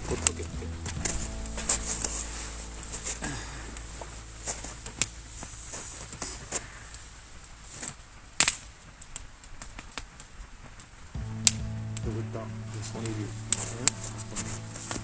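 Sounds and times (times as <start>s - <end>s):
fire popping: 0.0s - 15.0s
wood fire crackling: 0.0s - 15.0s.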